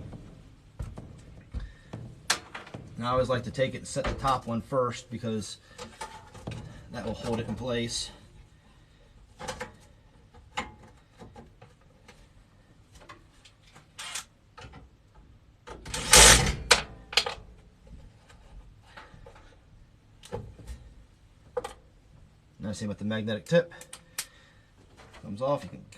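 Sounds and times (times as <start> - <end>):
metal clicks and knocks: 0.0 - 3.0, 15.7 - 17.6
metal scraping rattle: 15.9 - 16.8.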